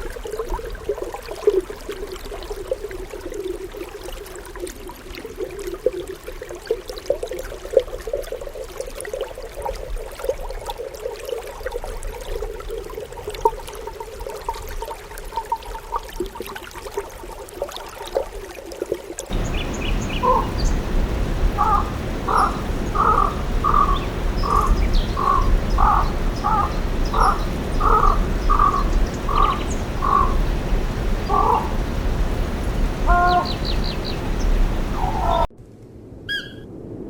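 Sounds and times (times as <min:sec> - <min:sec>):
low background rumble: 0:19.3 - 0:36.2
short pitched animal calls: 0:19.8 - 0:30.4, 0:33.0 - 0:33.7.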